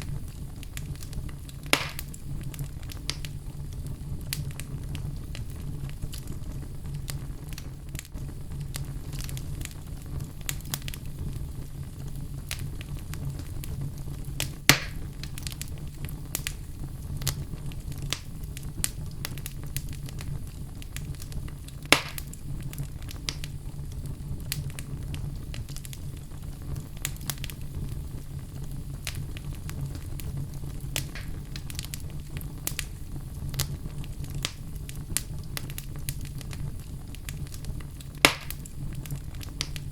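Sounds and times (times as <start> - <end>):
fire crackling and popping: 0.0 - 39.9
fire low rumble: 0.0 - 39.9.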